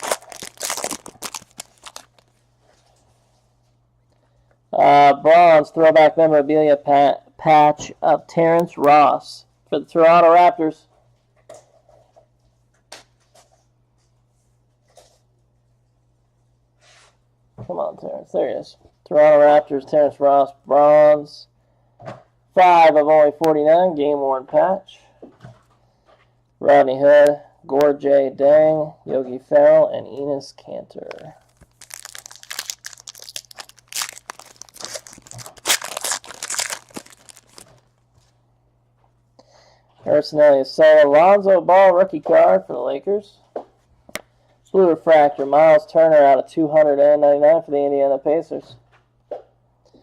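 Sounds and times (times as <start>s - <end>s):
foil wrapper tearing and crinkling: 0.0s - 2.3s, 31.4s - 37.9s
trading cards rustling and clicking: 0.0s - 2.3s, 31.2s - 37.8s
low steady hum: 0.0s - 50.0s.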